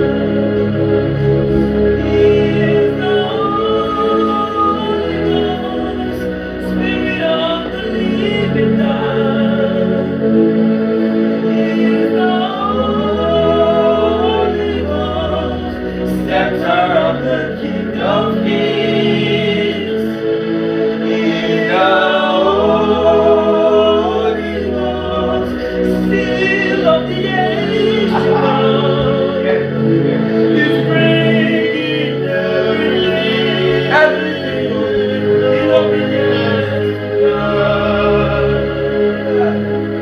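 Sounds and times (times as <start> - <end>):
person singing gospel: 0.0 - 40.0
sustained held chords: 0.0 - 40.0.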